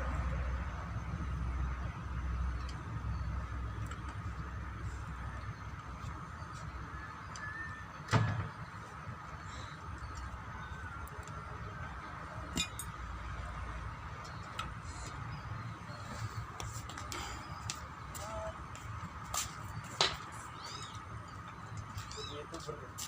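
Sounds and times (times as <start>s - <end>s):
metal tools and parts clinking: 12.5s - 13.0s.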